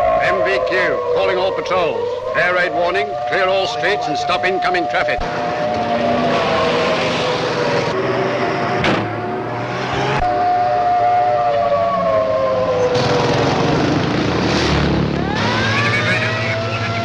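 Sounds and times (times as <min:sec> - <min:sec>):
air raid siren wailing: 0:00.0 - 0:17.0.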